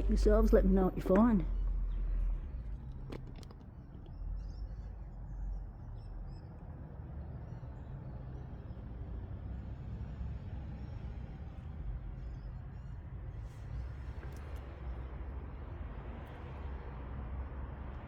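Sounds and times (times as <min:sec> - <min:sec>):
low rumbling noise: 0:00.0 - 0:03.5
small birds chirping: 0:00.0 - 0:15.8.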